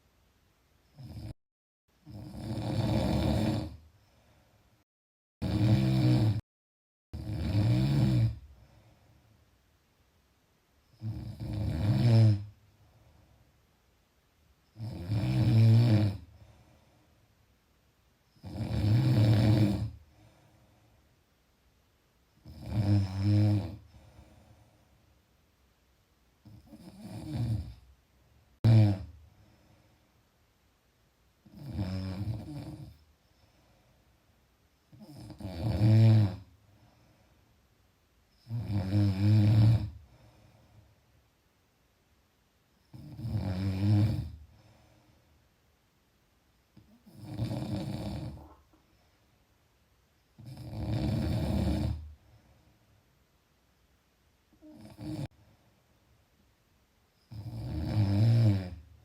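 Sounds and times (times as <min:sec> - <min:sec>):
loud snoring: 0:01.0 - 0:01.4, 0:02.0 - 0:03.8, 0:05.4 - 0:06.4, 0:07.2 - 0:08.4, 0:11.0 - 0:12.5, 0:14.8 - 0:16.3, 0:18.4 - 0:20.0, 0:22.4 - 0:23.8, 0:26.4 - 0:27.8, 0:28.6 - 0:29.2, 0:31.4 - 0:33.0, 0:34.9 - 0:36.5, 0:38.4 - 0:40.0, 0:42.9 - 0:44.4, 0:46.8 - 0:48.6, 0:50.4 - 0:52.1, 0:54.6 - 0:55.3, 0:57.3 - 0:58.8
faint breathing: 0:04.0 - 0:04.8, 0:08.5 - 0:09.5, 0:16.3 - 0:17.4, 0:20.0 - 0:21.2, 0:23.8 - 0:25.1, 0:29.2 - 0:30.3, 0:33.2 - 0:34.3, 0:36.6 - 0:37.7, 0:40.0 - 0:41.1, 0:44.4 - 0:45.5, 0:52.2 - 0:53.0.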